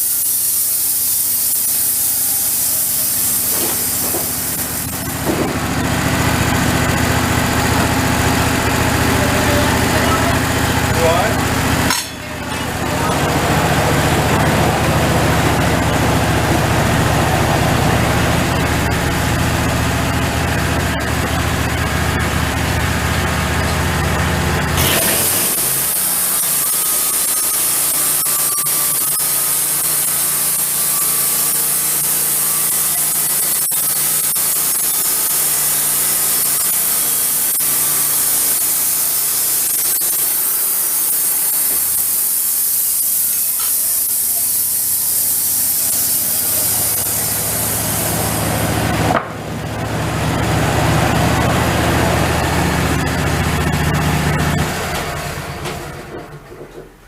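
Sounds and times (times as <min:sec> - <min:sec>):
band saw cutting a log: 0:00.0 - 0:55.6
low engine hum: 0:04.9 - 0:24.8.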